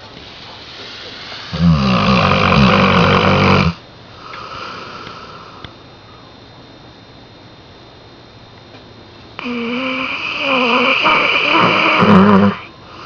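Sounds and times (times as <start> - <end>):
dog snoring loudly: 1.5 - 3.8, 9.4 - 13.0.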